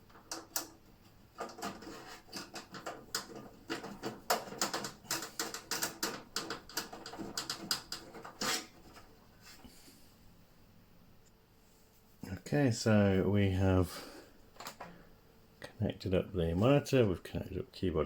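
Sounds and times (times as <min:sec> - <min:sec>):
cables plugging in clicks and knocks: 0:01.4 - 0:09.0.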